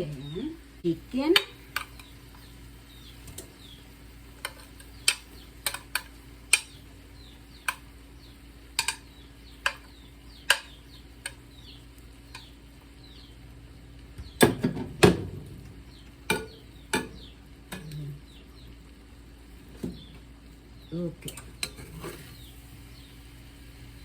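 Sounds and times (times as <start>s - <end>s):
faint sizzle: 0.0s - 24.0s
metal utensil knocking on pan: 8.8s - 11.4s, 16.3s - 17.9s.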